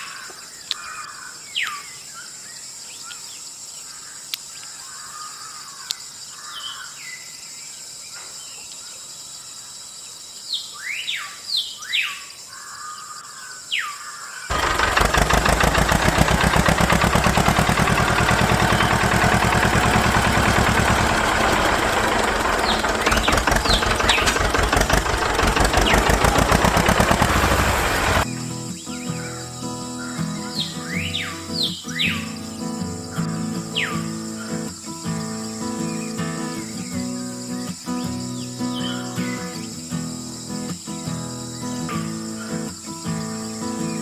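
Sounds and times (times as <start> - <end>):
faint outdoor hiss: 0.0 - 44.0
machine rattling: 14.5 - 28.3
bird chirps: 14.6 - 39.8.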